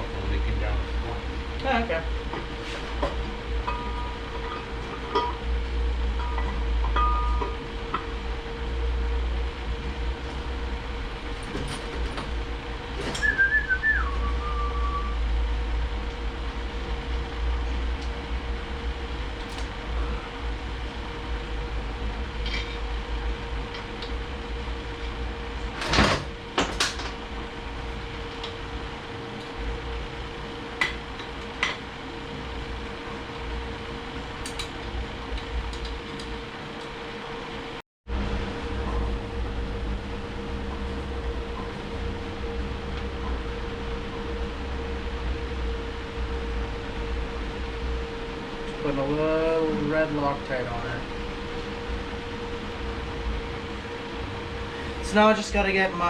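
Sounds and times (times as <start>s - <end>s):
workshop hum: 0.0s - 56.0s
short whistle dropping in pitch: 13.2s - 15.2s.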